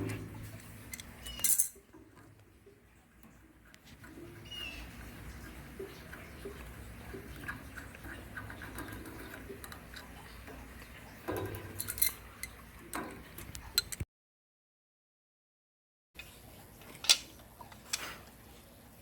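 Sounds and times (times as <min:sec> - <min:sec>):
metal tools clinking: 0:00.9 - 0:01.8, 0:11.3 - 0:13.2.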